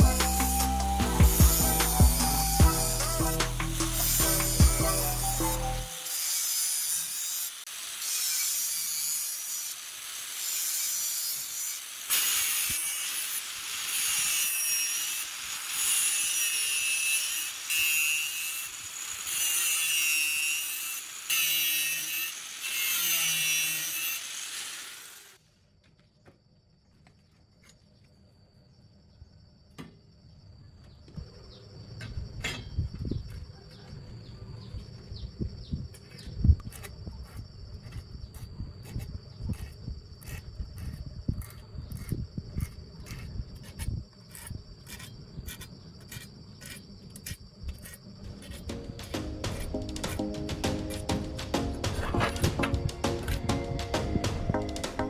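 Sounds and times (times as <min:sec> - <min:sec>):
power tool cutting: 0:00.0 - 0:25.4.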